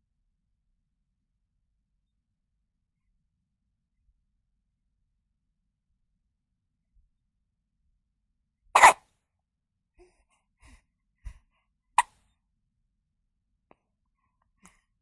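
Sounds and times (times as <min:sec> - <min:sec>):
baby hiccupping: 0:08.8 - 0:09.0.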